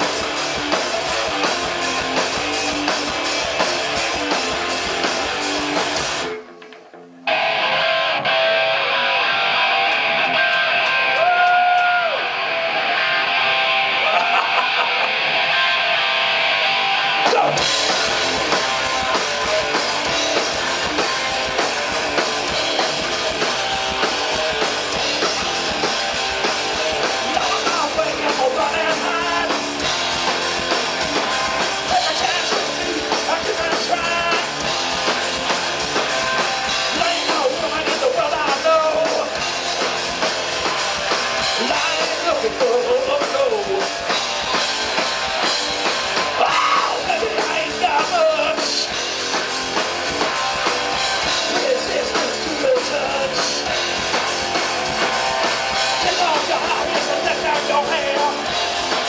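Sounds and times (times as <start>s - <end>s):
drum kit: 0.0s - 59.0s
rock band playing live: 0.0s - 59.0s
person singing: 27.3s - 29.6s, 31.9s - 34.6s, 41.6s - 43.9s, 46.4s - 48.9s, 51.4s - 53.7s, 56.0s - 58.5s.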